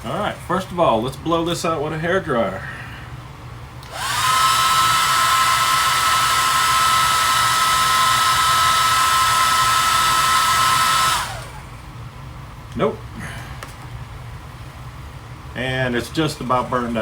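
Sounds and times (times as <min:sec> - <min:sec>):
hair dryer motor whine: 0:03.8 - 0:11.7.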